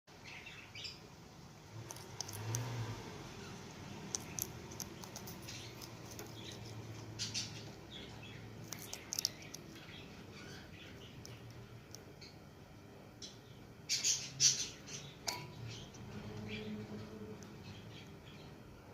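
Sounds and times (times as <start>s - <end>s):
parrot crunching beans: 1.8s - 12.4s.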